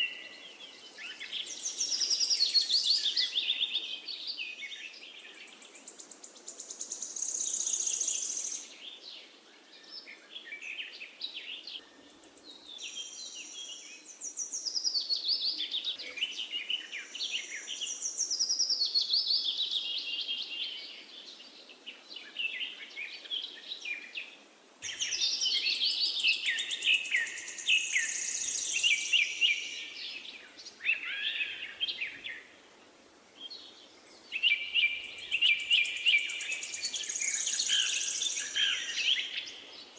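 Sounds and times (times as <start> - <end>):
finch twittering and trills: 34.3 - 39.6.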